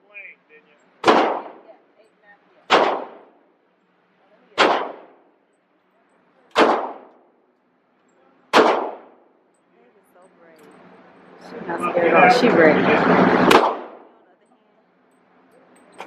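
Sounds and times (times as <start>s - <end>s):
gunshots: 1.0s - 1.7s, 2.7s - 3.4s, 4.6s - 5.2s, 6.5s - 7.2s, 8.5s - 9.2s, 13.4s - 14.2s.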